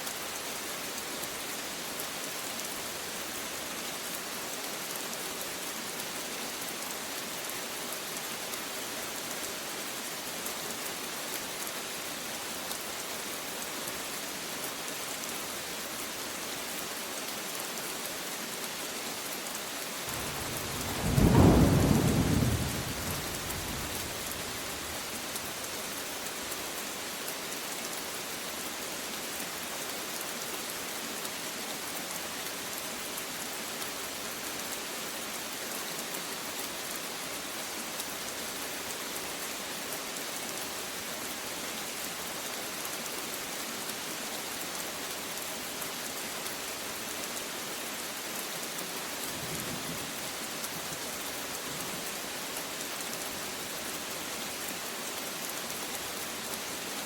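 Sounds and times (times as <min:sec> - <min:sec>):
rain falling: 0:00.0 - 0:57.0
thunderclap rumbling: 0:20.1 - 0:24.5.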